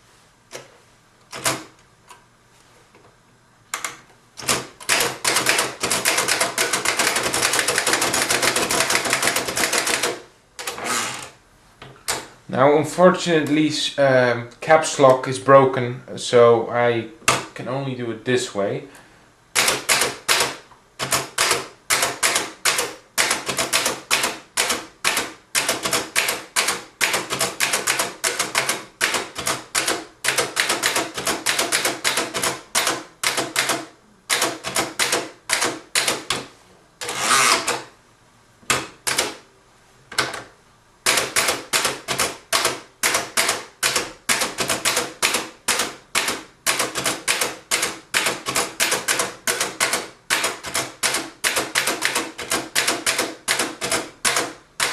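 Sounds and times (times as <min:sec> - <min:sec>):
typewriter keys clacking: 0:04.4 - 0:10.8, 0:19.6 - 0:37.8, 0:41.1 - 0:54.9
typewriter rasp: 0:04.4 - 0:11.4, 0:19.6 - 0:37.9, 0:38.7 - 0:39.4, 0:41.0 - 0:54.9.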